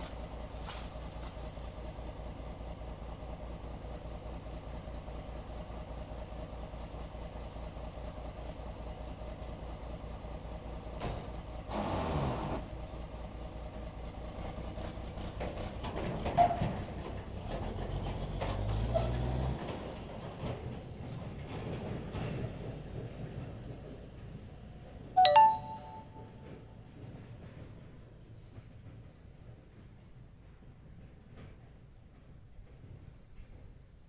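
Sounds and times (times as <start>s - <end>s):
diesel truck engine idling: 0.0s - 21.1s.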